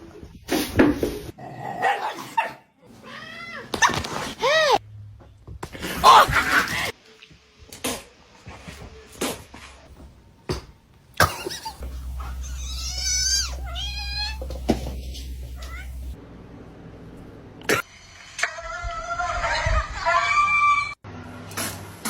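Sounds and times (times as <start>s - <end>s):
cat meowing: 12.3s - 16.2s.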